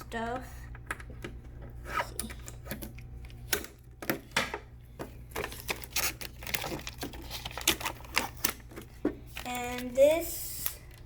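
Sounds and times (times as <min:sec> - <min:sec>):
packaging crinkling and tearing: 0:05.3 - 0:11.0.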